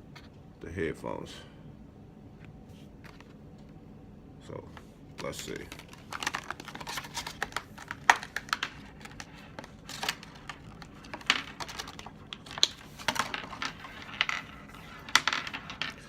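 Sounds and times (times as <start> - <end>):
earphones and packaging handled: 5.2 - 16.0.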